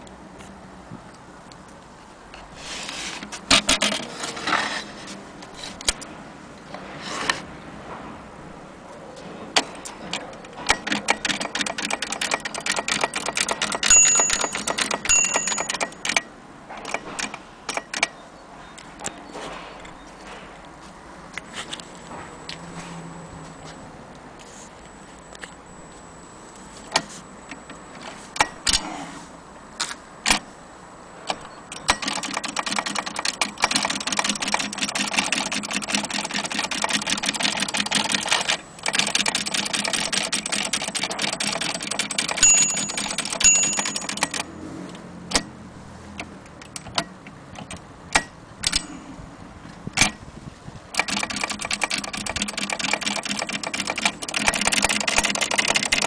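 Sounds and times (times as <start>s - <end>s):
typewriter clicking and rattling: 3.5s - 4.1s, 10.1s - 18.1s, 31.3s - 44.5s, 50.9s - 56.0s
short high pings: 13.9s - 16.0s, 42.4s - 44.4s.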